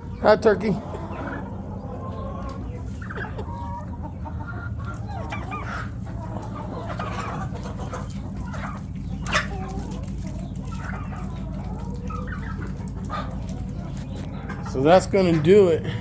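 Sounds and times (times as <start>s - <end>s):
chickens clucking: 0.0s - 16.0s.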